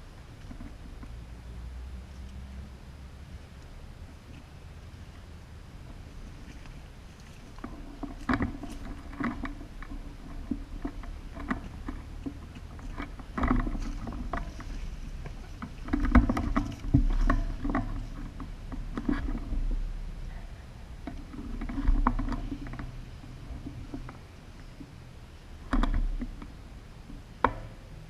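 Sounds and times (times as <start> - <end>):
clicks and knocks with rustling: 5.8 - 25.0, 25.6 - 27.8.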